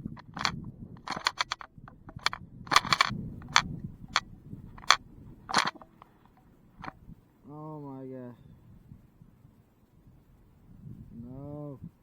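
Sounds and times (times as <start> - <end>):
sharp clicks and knocks: 0.0 - 4.2, 4.8 - 7.0
low wind rumble: 0.0 - 7.5, 8.4 - 12.0.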